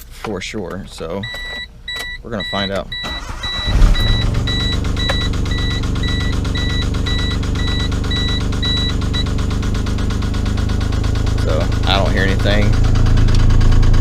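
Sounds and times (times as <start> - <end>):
car warning chime beeping: 1.2 - 10.4
car engine idling with knock: 3.8 - 14.0.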